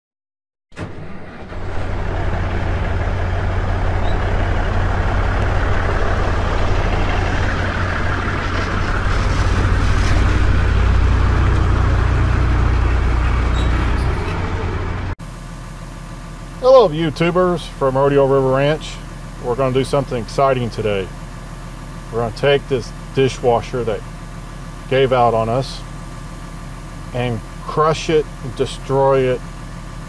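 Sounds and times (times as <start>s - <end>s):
excavator diesel engine running: 0.8s - 30.0s
broad rushing noise: 1.5s - 15.2s.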